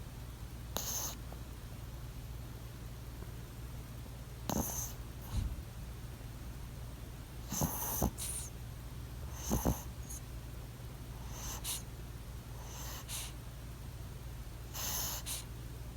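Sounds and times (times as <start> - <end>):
dog snoring: 0.8 - 1.2, 4.4 - 5.5, 7.4 - 8.5, 9.2 - 10.2, 11.2 - 11.9, 12.6 - 13.3, 14.7 - 15.5.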